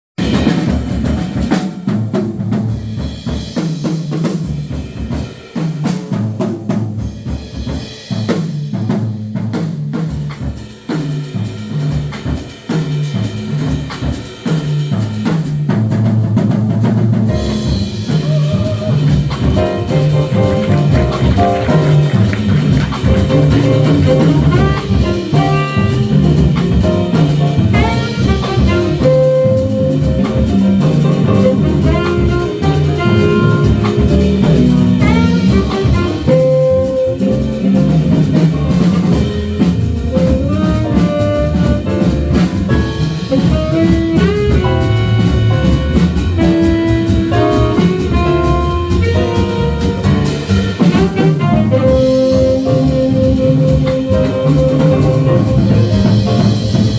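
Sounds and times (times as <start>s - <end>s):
drum kit: 0.2s - 56.9s
saxophone melody: 17.4s - 56.9s.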